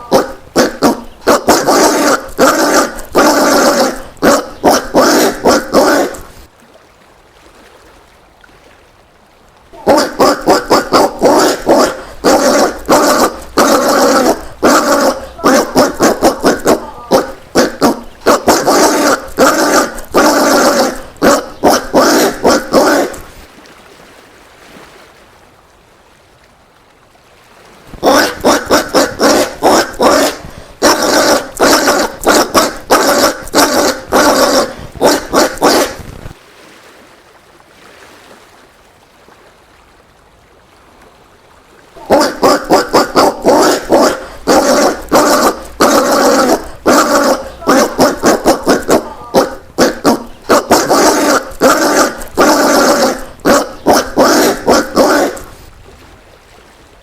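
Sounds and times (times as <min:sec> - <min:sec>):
peccary calling: 0:00.0 - 0:06.5, 0:09.8 - 0:23.4, 0:27.9 - 0:36.3, 0:42.0 - 0:55.7.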